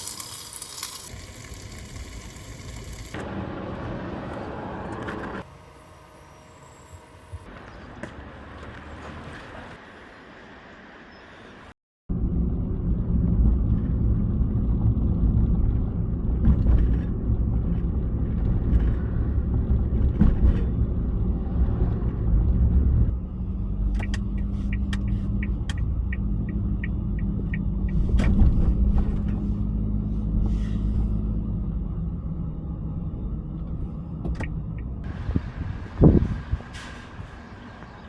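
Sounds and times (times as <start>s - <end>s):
uneven rumble inside car: 12.1s - 36.6s.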